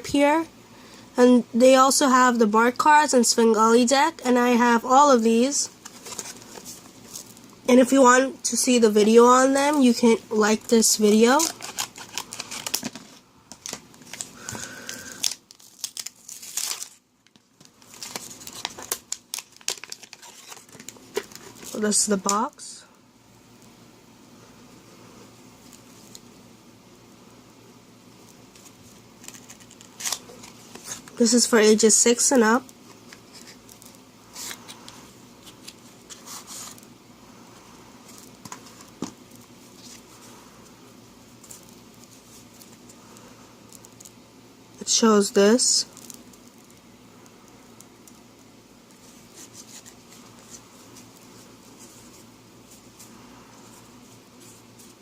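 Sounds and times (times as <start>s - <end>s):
plastic and cardboard crinkling: 5.7s - 7.5s, 9.0s - 22.4s, 28.5s - 31.4s, 32.4s - 36.9s, 38.0s - 40.4s, 48.9s - 55.0s
cardboard box rustling: 5.8s - 7.3s.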